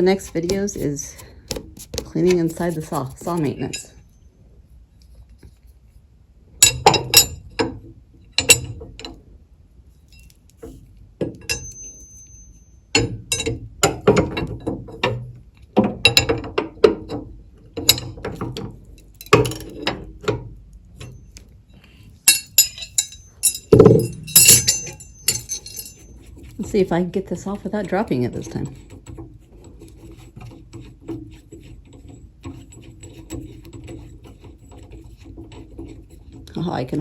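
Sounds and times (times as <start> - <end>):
steel parts clinking and clanking: 11.3 - 15.2, 17.8 - 20.4, 22.2 - 26.9.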